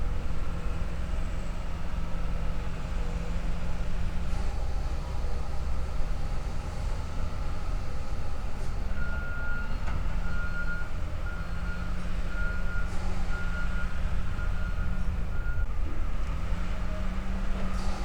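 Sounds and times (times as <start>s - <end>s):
heavy machine engine running: 0.1s - 18.0s
reversing alarm beeping: 8.9s - 15.7s.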